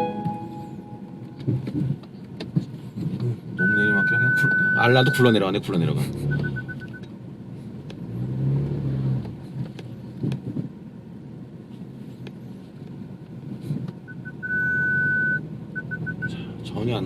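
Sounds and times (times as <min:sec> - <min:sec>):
parking sensor beeps: 0:00.0 - 0:01.4, 0:03.6 - 0:05.4, 0:06.3 - 0:07.1, 0:14.0 - 0:16.5
car rolling slowly: 0:00.0 - 0:17.0.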